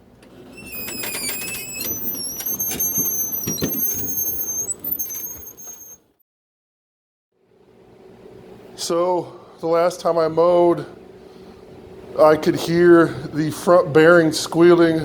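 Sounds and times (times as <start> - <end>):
wheel bearings squealing: 0.5 - 6.1.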